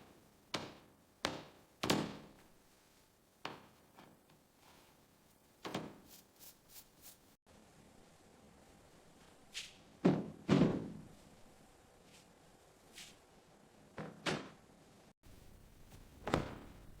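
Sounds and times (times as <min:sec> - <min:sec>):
hard knocks and thunks: 0:16.2 - 0:17.0.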